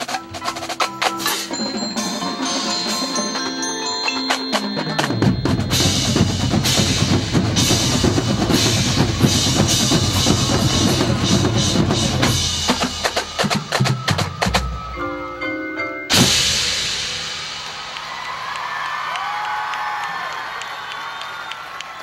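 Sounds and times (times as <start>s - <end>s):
drumline playing drum rolls: 0.0s - 15.0s.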